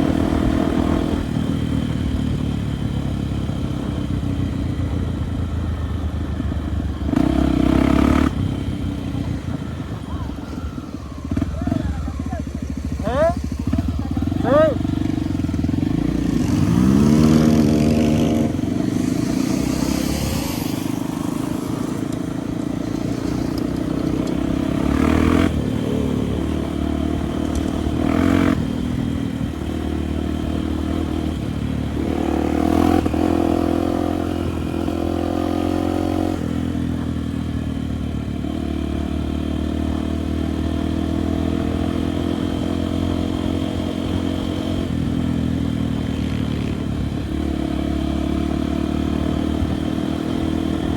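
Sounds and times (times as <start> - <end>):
motorcycle engine revving: 0.0 - 50.9
clatter over rough ground: 22.0 - 24.5.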